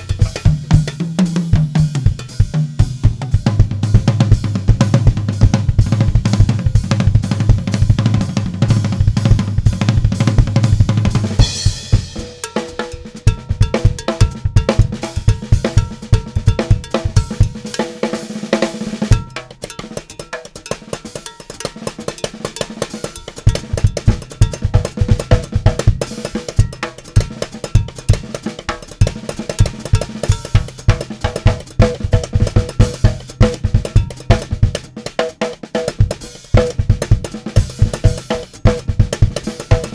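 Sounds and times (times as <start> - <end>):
bass drum and tom strokes: 0.0 - 17.7
cowbell-like percussion melody: 0.0 - 39.9.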